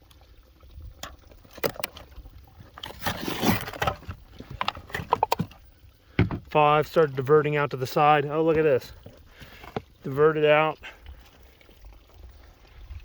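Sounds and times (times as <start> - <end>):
cardboard boxes and cans handled: 1.4 - 5.6
rustling scrape: 2.7 - 5.5.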